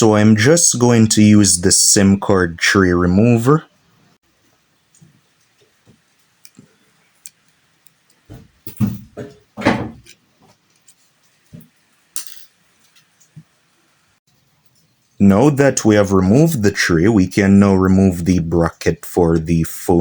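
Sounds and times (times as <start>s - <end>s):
small clicks and taps: 4.9s - 9.4s
knocks and handling noise: 4.9s - 13.6s.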